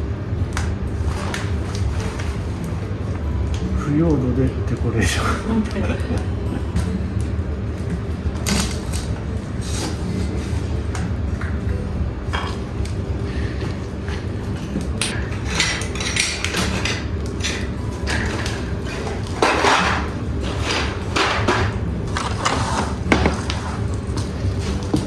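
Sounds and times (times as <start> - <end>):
pottery shards clinking: 14.6 - 21.7.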